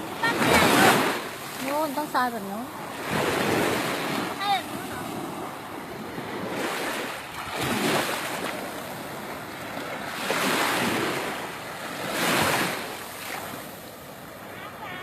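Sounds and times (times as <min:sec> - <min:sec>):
sea waves washing ashore: 0:00.0 - 0:15.0.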